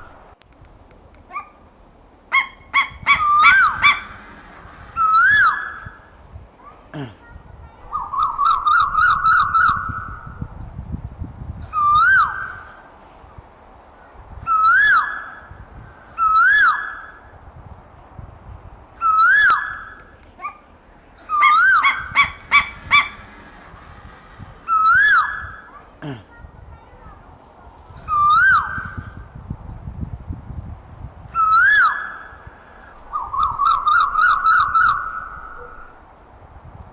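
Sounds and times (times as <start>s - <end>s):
bird whistled calls: 2.3s - 6.1s, 7.9s - 10.4s, 11.6s - 12.9s, 14.4s - 17.3s, 19.0s - 20.6s, 21.2s - 25.7s, 28.0s - 29.2s, 31.4s - 36.0s.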